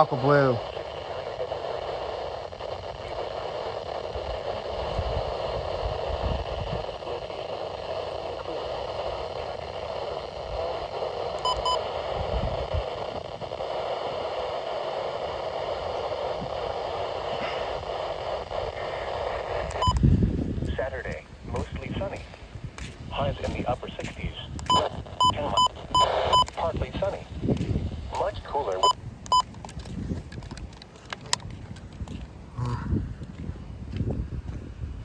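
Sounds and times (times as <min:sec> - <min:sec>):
radio static hiss: 0:00.0 - 0:29.5
faint double beep: 0:11.4 - 0:11.8, 0:24.6 - 0:26.6, 0:28.7 - 0:29.4.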